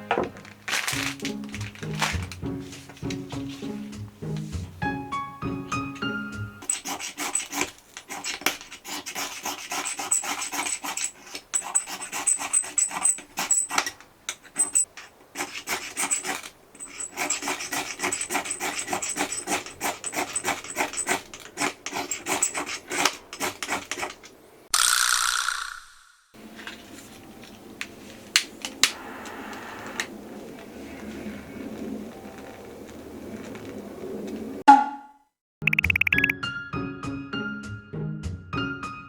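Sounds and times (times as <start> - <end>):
tool rasping wood: 6.6 - 24.3.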